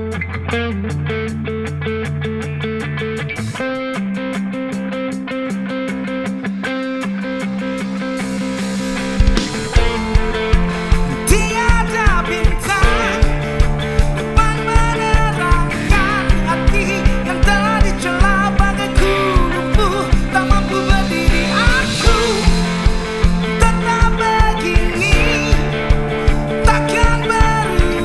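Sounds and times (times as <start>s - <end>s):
drums: 0.0s - 28.0s
guitar: 0.0s - 28.0s
lead melody: 6.0s - 28.0s
bass: 7.5s - 28.0s.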